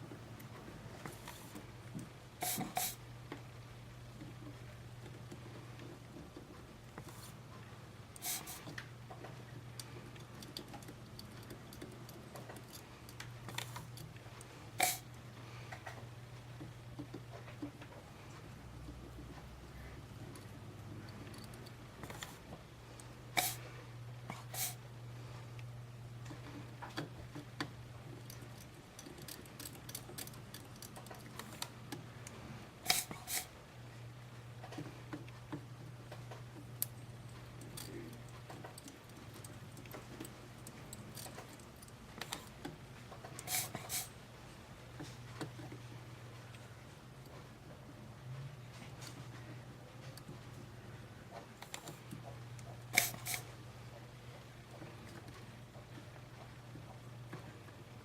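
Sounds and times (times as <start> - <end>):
short hissing bursts: 2.4 - 3.0, 8.2 - 8.6, 14.8 - 15.0, 23.4 - 23.6, 24.4 - 24.8, 32.9 - 33.5, 43.5 - 44.1, 53.0 - 53.4
hand tools ticking and clicking: 28.3 - 31.4.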